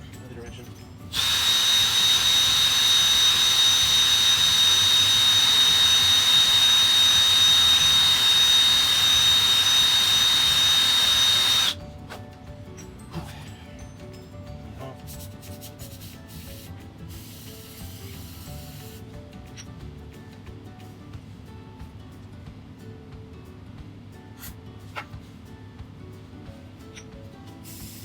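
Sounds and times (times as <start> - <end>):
electric drill whining: 1.1 - 11.8
sanding hiss: 27.7 - 28.0.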